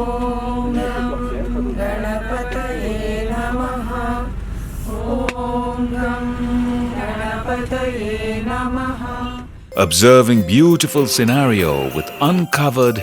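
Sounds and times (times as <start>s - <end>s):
chanted devotional singing: 0.0s - 9.9s
low drone: 0.0s - 9.9s.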